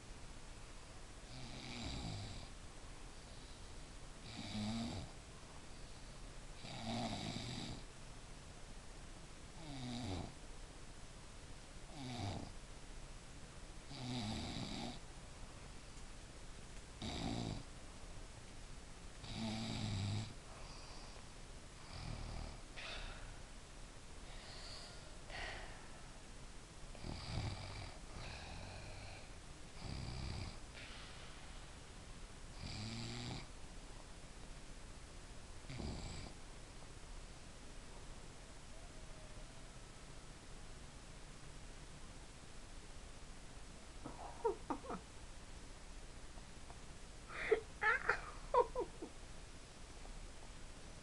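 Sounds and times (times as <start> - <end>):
snoring: 1.3 - 2.5, 4.2 - 5.2, 6.6 - 7.9, 9.6 - 10.4, 11.9 - 12.6, 13.9 - 15.0, 17.0 - 17.7, 19.2 - 21.1, 21.8 - 22.6, 26.9 - 30.6, 32.6 - 33.5, 35.7 - 36.4.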